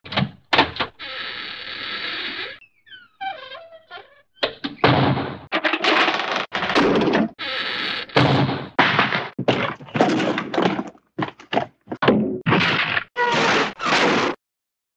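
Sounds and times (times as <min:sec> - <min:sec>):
cartoon door bangs and thuds: 0:04.4 - 0:14.4.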